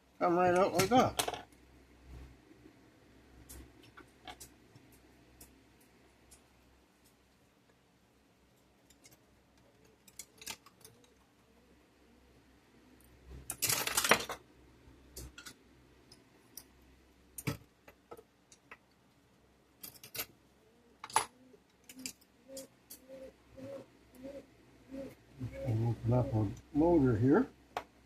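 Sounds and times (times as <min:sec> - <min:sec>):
clattering rattle of small parts: 0:00.7 - 0:01.6, 0:03.5 - 0:06.5, 0:08.6 - 0:11.3, 0:13.3 - 0:14.5, 0:19.8 - 0:20.4, 0:21.0 - 0:22.6.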